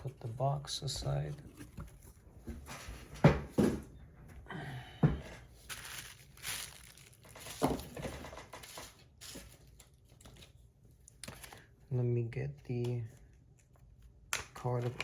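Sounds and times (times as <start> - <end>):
packaging rustling: 5.5 - 11.7.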